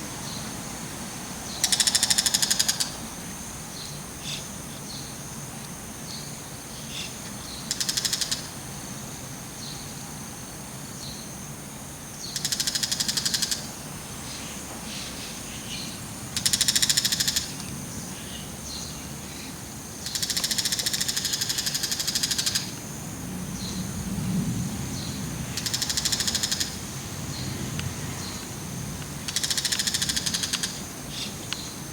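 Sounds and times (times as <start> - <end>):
shrike harsh rattling calls: 1.5 - 3.0, 20.0 - 22.7, 25.5 - 26.8, 29.2 - 31.5.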